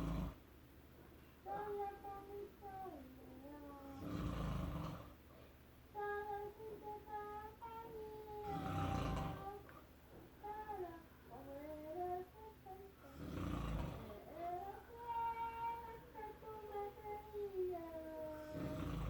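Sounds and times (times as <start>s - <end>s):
man snoring: 0.0s - 0.4s, 3.9s - 5.2s, 8.4s - 9.6s, 13.0s - 14.2s, 18.4s - 19.0s
woman singing slow melody: 10.4s - 13.3s.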